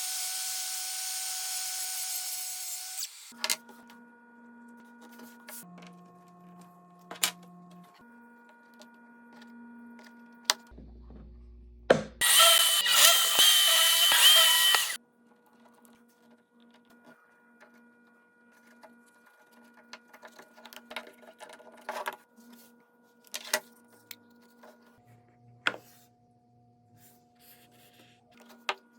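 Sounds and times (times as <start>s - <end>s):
electric drill whining: 12.2s - 15.0s.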